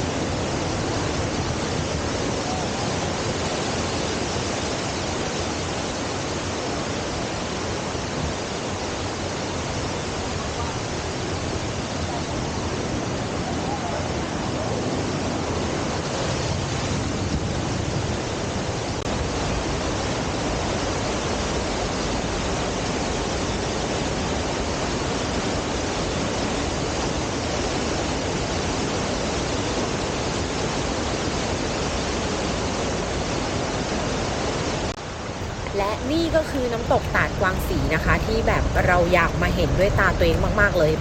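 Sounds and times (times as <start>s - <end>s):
waterfall rushing: 0.0s - 41.0s.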